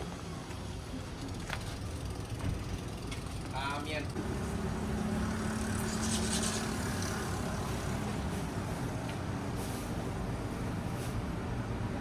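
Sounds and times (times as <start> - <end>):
traffic: 0.0 - 12.0
low engine hum: 4.1 - 12.0.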